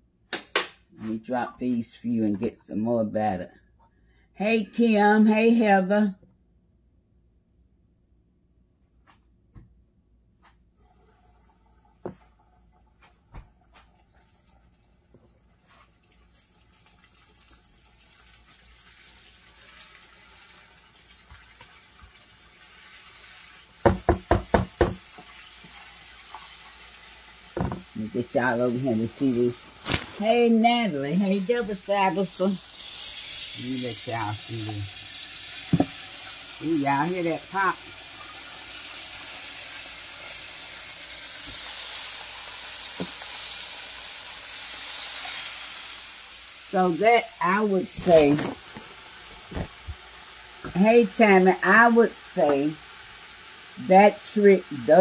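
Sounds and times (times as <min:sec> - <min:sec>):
chicken frying in hot oil: 0:10.8 - 0:55.0.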